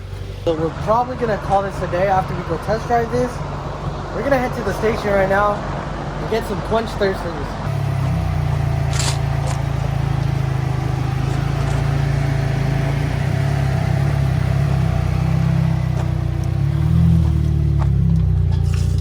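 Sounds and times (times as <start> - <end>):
car engine droning: 0.0 - 19.0
sharp click: 8.9 - 9.6.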